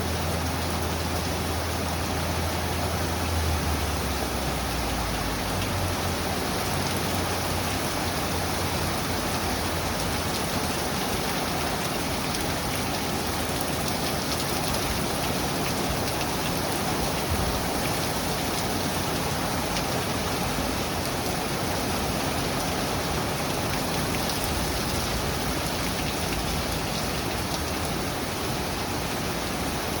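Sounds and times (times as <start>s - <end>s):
steady rain falling: 0.0s - 30.0s.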